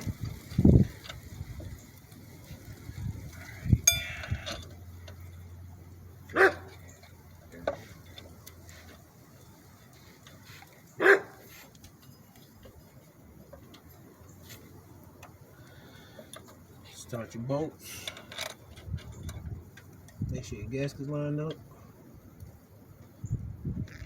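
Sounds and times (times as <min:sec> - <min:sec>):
metallic clink with ring: 0:03.8 - 0:04.6
dog barking: 0:06.3 - 0:06.8, 0:11.0 - 0:11.5.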